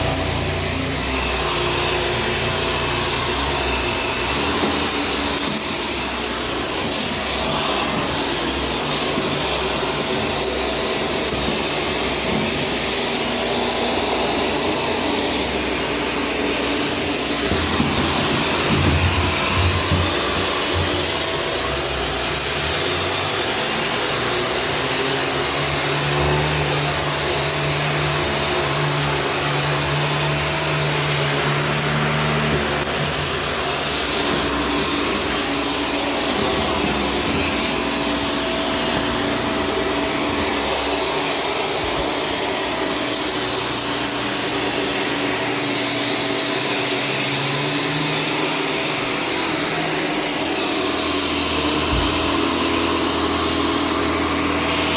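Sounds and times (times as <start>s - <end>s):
vacuum cleaner running: 0.0s - 54.9s.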